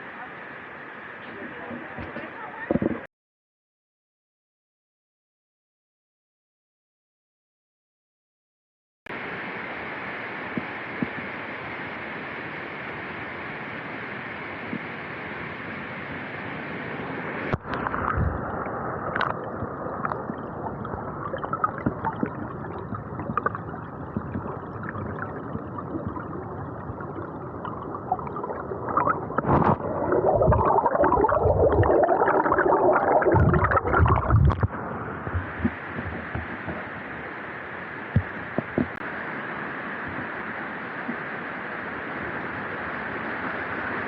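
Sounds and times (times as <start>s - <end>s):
rushing water: 9.1s - 44.0s
muffled underwater gurgling: 17.4s - 37.4s.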